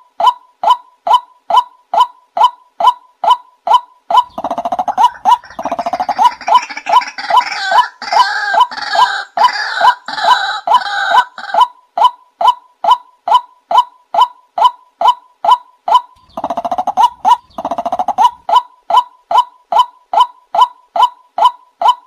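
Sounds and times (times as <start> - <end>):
waterhen calling: 4.2 - 11.7, 16.2 - 18.6
fast stuttering rattle: 16.2 - 18.4.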